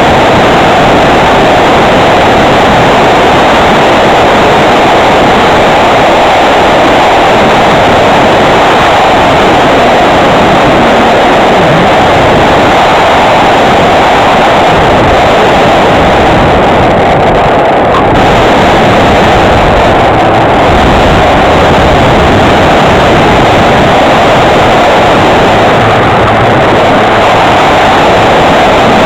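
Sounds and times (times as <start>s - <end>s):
rush of airflow: 0.0s - 29.0s.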